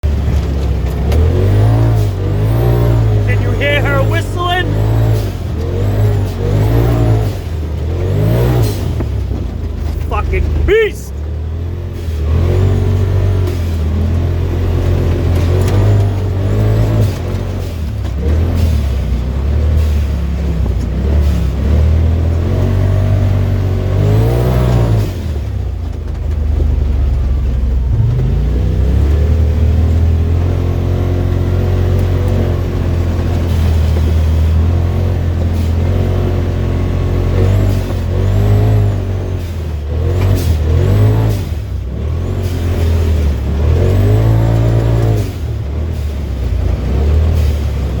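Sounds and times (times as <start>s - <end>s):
engine revving: 1.1s - 9.0s.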